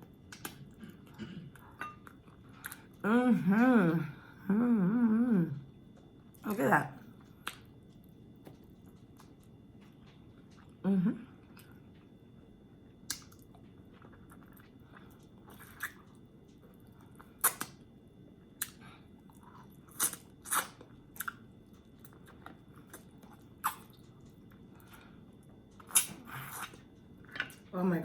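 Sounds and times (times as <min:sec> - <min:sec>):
person chewing food: 0:07.1 - 0:10.8, 0:12.9 - 0:27.7
wet mouth clicks and smacks: 0:13.1 - 0:13.4.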